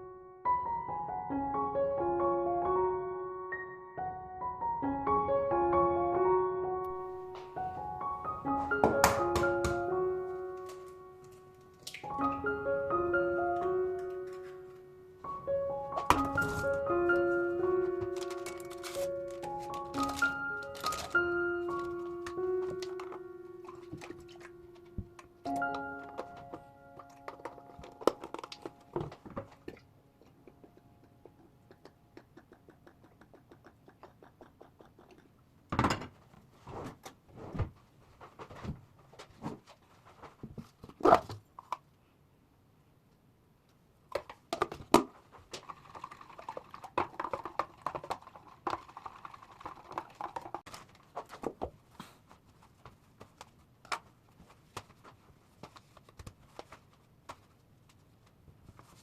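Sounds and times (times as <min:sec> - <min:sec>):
objects being moved and set down: 0:15.9 - 0:29.8.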